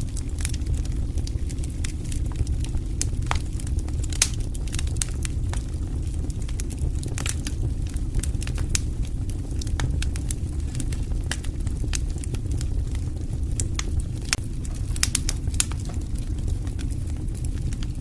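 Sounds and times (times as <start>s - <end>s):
fire pops and snaps: 0.0s - 18.0s
low flame noise: 0.0s - 18.0s.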